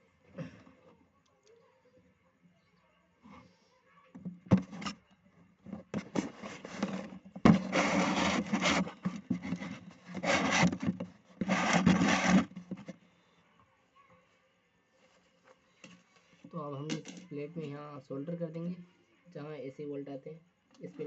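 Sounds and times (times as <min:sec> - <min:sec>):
hand scraping circuit board: 0:05.7 - 0:12.9.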